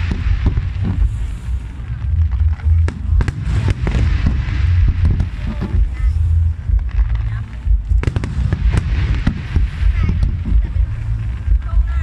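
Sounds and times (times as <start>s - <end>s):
deep rumble of aerial shells: 0.0s - 12.0s
fireworks bangs: 0.0s - 12.0s.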